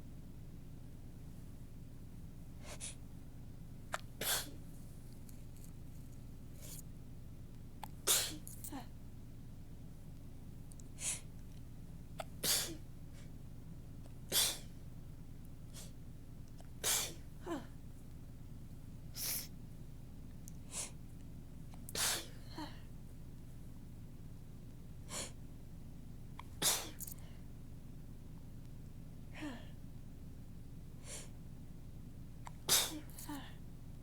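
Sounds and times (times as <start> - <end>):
soft human sneezes: 2.6 - 3.0, 3.9 - 4.6, 7.8 - 8.9, 11.0 - 11.3, 12.2 - 13.3, 14.3 - 14.8, 15.7 - 16.0, 16.8 - 17.8, 19.1 - 19.5, 21.9 - 22.8, 25.1 - 25.4, 26.4 - 27.4, 32.4 - 33.6.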